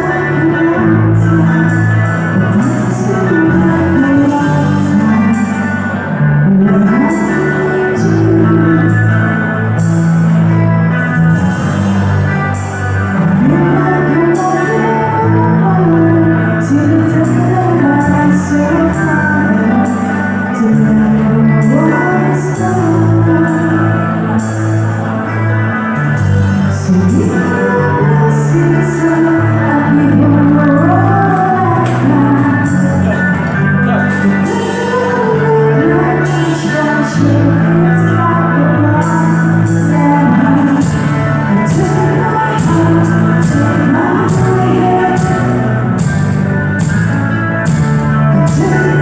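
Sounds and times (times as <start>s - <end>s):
guitar: 0.0s - 49.0s
live band playing amplified music: 0.0s - 49.0s
person singing: 0.0s - 49.0s
sustained bass notes: 0.0s - 49.0s.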